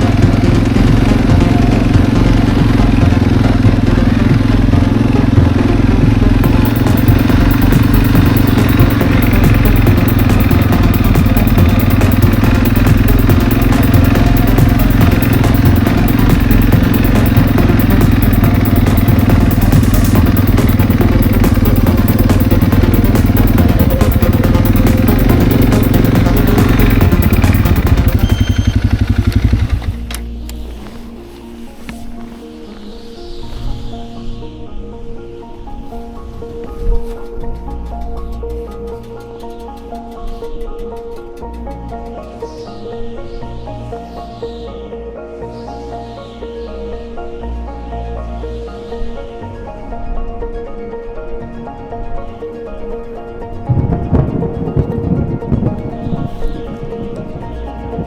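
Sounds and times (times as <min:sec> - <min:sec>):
loud engine with rapid pulsing: 0:00.0 - 0:30.2, 0:54.1 - 0:58.0.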